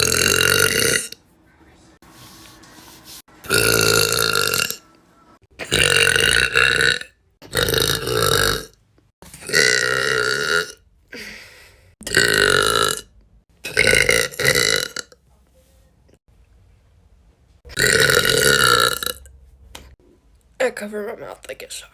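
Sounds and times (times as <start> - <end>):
girls burping loudly: 3.5 - 4.8.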